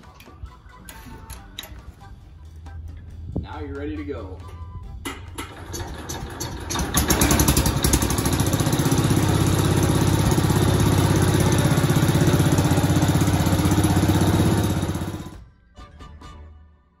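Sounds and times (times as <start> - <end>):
small engine running: 5.5 - 15.4.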